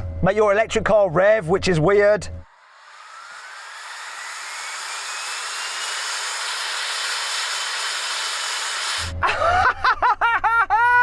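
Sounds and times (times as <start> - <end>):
cooling fans whining: 2.4 - 9.3.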